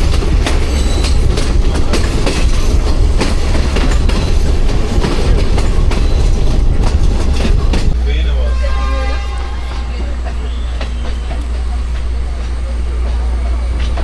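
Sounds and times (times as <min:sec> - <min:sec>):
train rumbling on rails: 0:00.0 - 0:14.0
train wheels clattering: 0:00.0 - 0:14.0.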